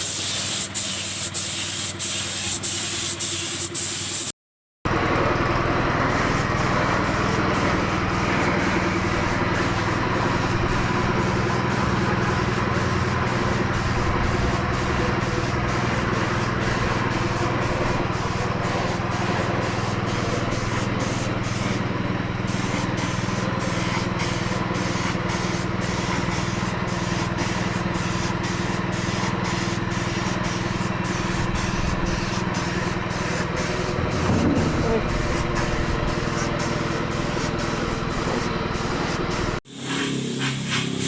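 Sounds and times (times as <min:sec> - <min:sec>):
paint spray gun hissing: 0:00.0 - 0:04.3, 0:15.2 - 0:21.8, 0:22.5 - 0:34.3, 0:39.1 - 0:41.0
low machine hum: 0:31.3 - 0:41.0.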